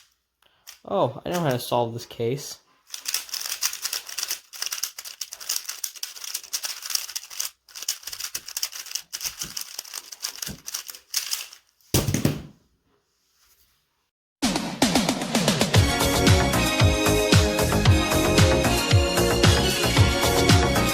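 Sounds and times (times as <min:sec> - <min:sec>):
puzzle cube plastic clicks: 0:00.0 - 0:01.7, 0:02.9 - 0:11.7
loud full thud: 0:12.0 - 0:12.6.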